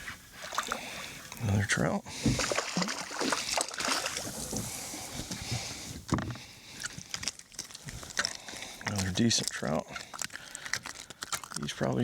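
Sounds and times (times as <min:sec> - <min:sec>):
water splashing against kayak: 0:00.0 - 0:01.4, 0:02.1 - 0:09.5.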